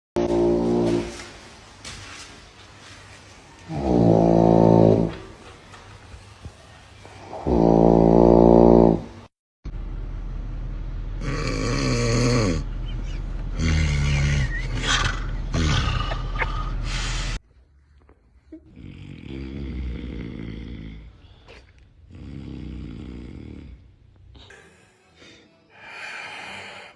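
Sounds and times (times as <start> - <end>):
steady low hum: 9.7 - 17.4
person snoring: 11.2 - 12.7, 13.6 - 17.4, 18.7 - 24.7.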